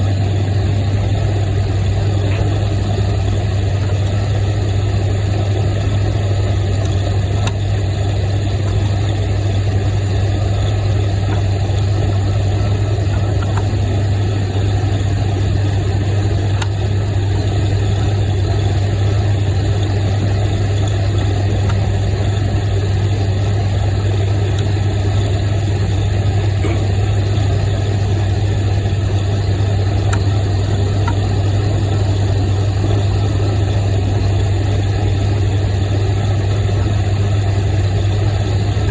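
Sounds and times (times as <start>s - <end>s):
low mechanical hum: 0.0s - 38.9s.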